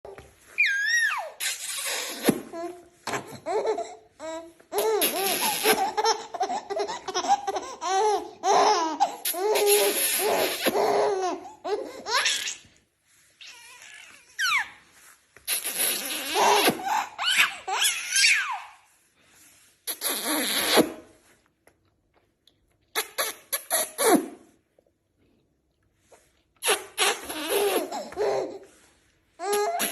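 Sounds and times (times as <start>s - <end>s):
baby laughing: 0.8s - 12.7s, 15.6s - 18.8s, 26.6s - 28.8s, 29.4s - 29.9s.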